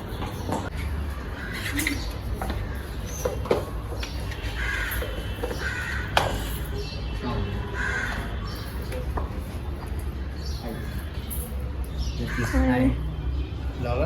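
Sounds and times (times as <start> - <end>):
crows cawing: 1.1 - 3.4, 4.3 - 7.0, 7.6 - 8.9, 10.6 - 11.3, 12.2 - 13.0.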